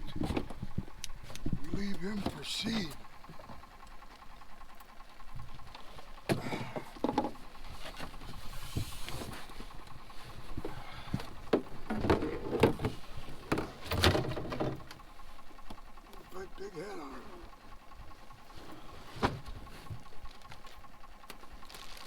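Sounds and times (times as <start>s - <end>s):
knocks and scuffs in a boat: 0.0s - 2.5s, 5.4s - 15.9s, 18.2s - 22.0s.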